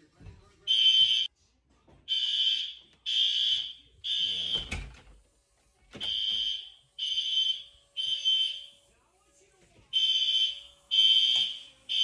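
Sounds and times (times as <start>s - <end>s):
fire alarm beeps: 0.7s - 1.3s, 2.1s - 4.8s, 6.0s - 8.8s, 9.9s - 12.0s.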